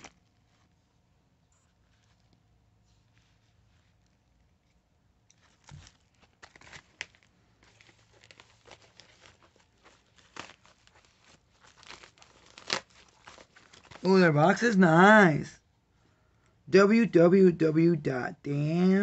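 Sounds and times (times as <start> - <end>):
packaging rustling and crinkling: 5.4 - 14.1.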